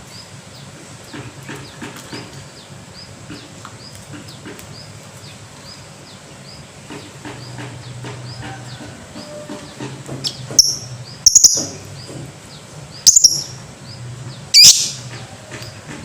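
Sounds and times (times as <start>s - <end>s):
lovebirds chirping: 9.2s - 15.1s.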